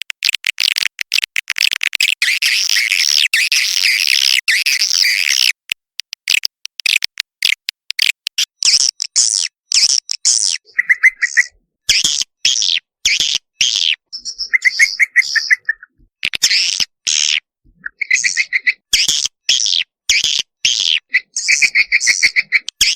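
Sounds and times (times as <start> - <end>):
fast rattling trills: 2.0 - 5.6.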